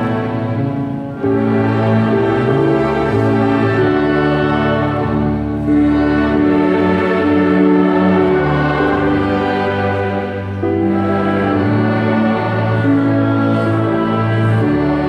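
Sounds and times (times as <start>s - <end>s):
slow orchestral strings: 0.0s - 15.0s.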